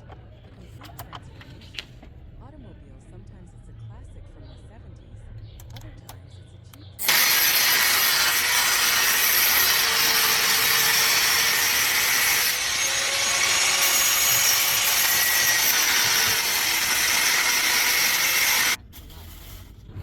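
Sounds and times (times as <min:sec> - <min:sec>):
power tool abrading metal: 0:07.0 - 0:18.8.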